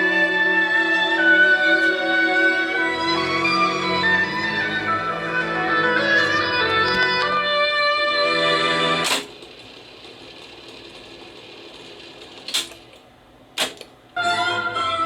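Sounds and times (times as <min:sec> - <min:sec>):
orchestral string music: 0:00.0 - 0:09.0, 0:14.2 - 0:15.0.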